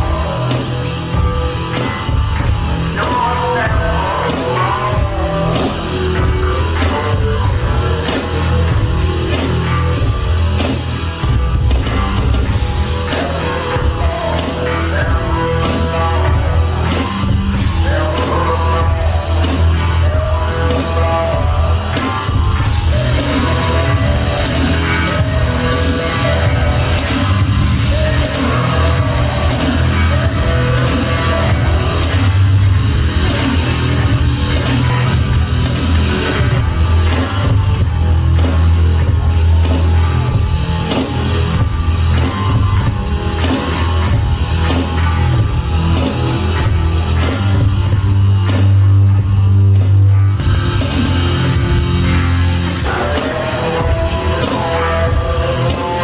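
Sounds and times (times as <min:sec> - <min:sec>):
heavy metal music: 0:00.0 - 0:56.0.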